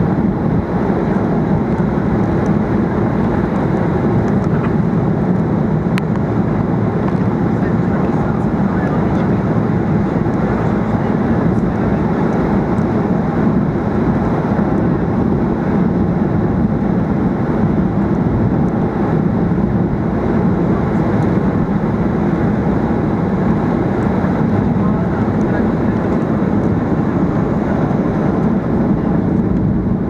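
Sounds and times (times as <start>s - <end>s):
airliner cabin engine and airflow noise: 0.0s - 30.0s.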